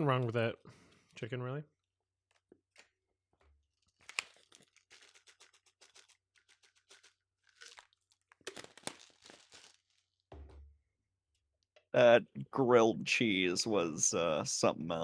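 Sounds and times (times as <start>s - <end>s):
crunching and chewing crisp food: 3.8s - 10.2s.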